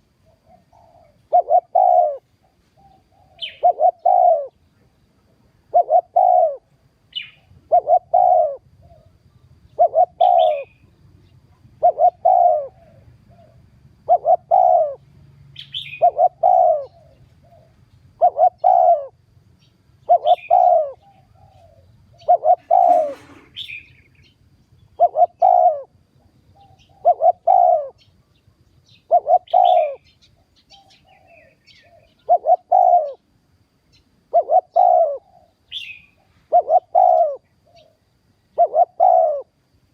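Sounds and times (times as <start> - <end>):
dove cooing: 0.0 - 4.6, 5.3 - 19.2, 20.0 - 28.1, 28.9 - 33.3, 34.2 - 39.6
high bird chirps: 9.8 - 10.8, 20.0 - 25.8.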